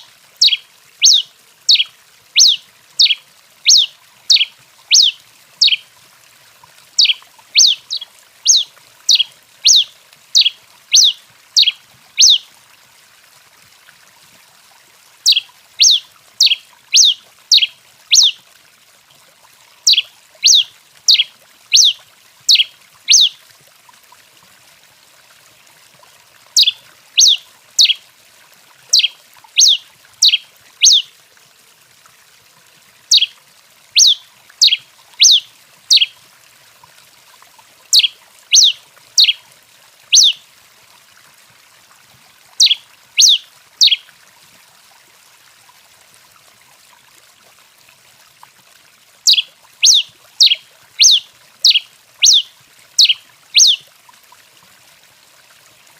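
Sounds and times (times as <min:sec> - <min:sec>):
finch singing: 0:00.4 - 0:05.8, 0:07.0 - 0:12.4, 0:15.3 - 0:18.4, 0:19.9 - 0:23.3, 0:26.6 - 0:28.0, 0:28.9 - 0:31.1, 0:33.1 - 0:33.3, 0:34.0 - 0:36.1, 0:37.9 - 0:39.4, 0:40.1 - 0:40.4, 0:42.6 - 0:44.0, 0:49.3 - 0:53.8.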